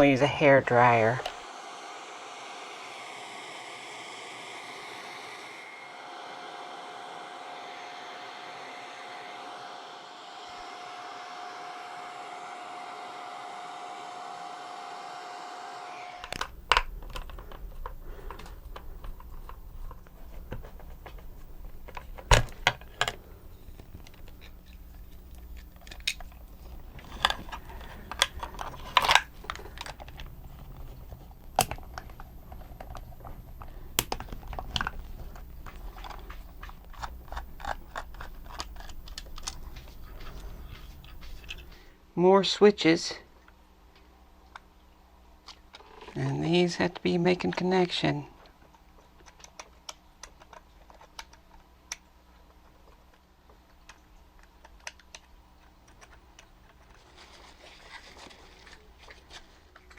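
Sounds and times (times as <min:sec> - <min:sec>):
hair dryer running: 0:00.0 - 0:41.9
small parts clicking and knocking: 0:16.2 - 0:41.9, 0:48.7 - 0:59.9.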